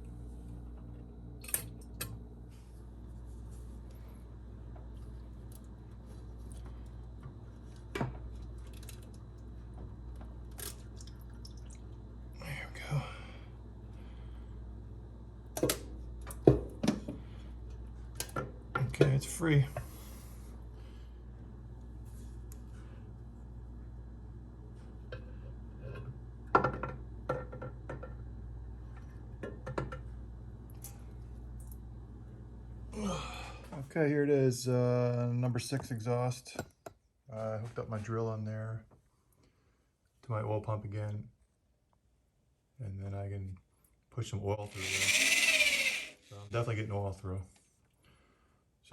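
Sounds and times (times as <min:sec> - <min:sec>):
steady low hum: 0:00.0 - 0:36.6.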